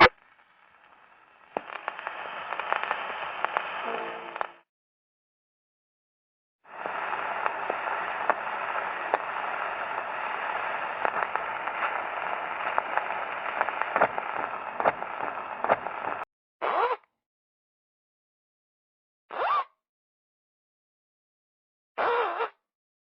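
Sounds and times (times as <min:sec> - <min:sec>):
steady hiss: 0:00.0 - 0:04.6, 0:06.7 - 0:16.2
crackles and clicks: 0:00.0 - 0:04.7, 0:06.7 - 0:16.3.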